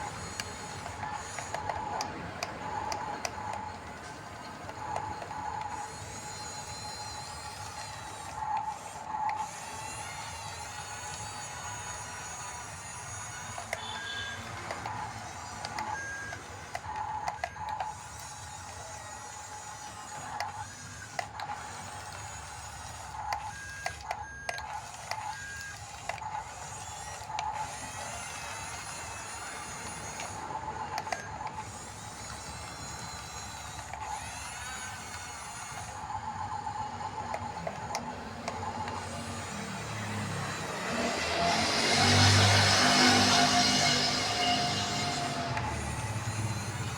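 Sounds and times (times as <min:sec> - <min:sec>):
clicks: 0:00.0 - 0:41.3, 0:41.9 - 0:46.9
electric motors whining: 0:00.0 - 0:46.9.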